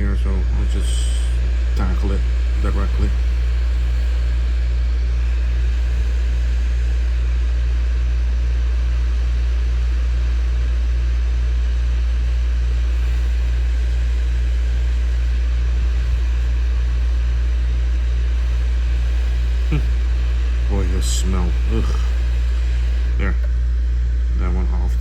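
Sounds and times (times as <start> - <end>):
hot air blower humming: 0.0 - 25.0.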